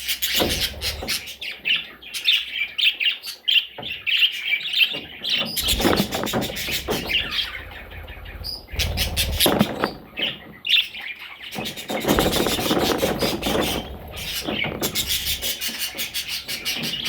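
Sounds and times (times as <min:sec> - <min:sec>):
baby budgerigars chirping: 0:00.0 - 0:17.0
low bumps: 0:05.5 - 0:10.6.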